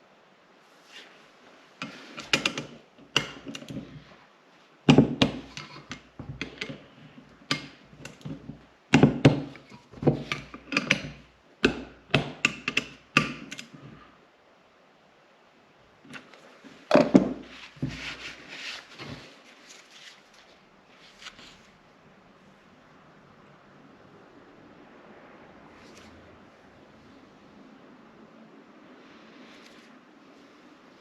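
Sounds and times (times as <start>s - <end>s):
metal tools clicking and knocking: 1.8s - 3.9s, 4.9s - 13.8s.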